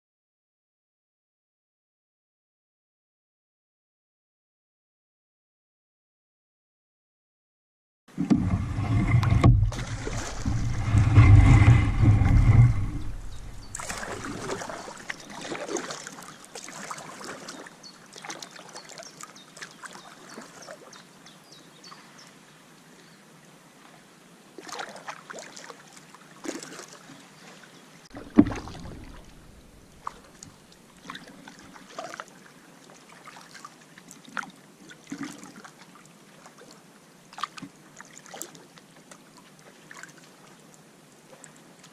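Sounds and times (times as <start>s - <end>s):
paddle splashing in water: 8.1s - 20.9s, 24.6s - 36.7s, 37.4s - 38.7s
loud low rumble: 8.4s - 14.5s.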